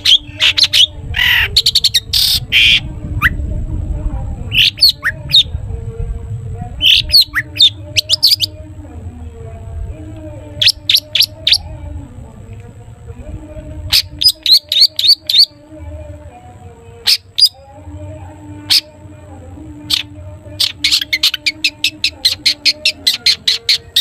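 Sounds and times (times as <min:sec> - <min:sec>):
bird chirping: 0:00.0 - 0:03.4, 0:06.8 - 0:08.6, 0:19.9 - 0:24.0.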